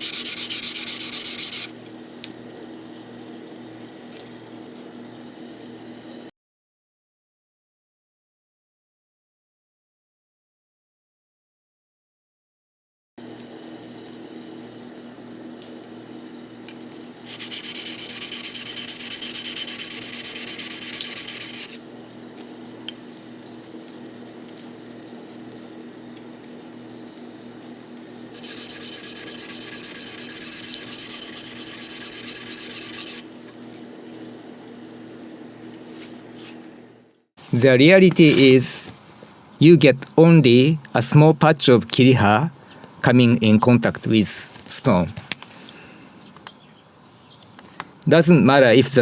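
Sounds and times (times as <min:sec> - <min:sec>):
blade scraping on whetstone: 0:00.0 - 0:01.7, 0:17.3 - 0:21.8, 0:28.4 - 0:33.2.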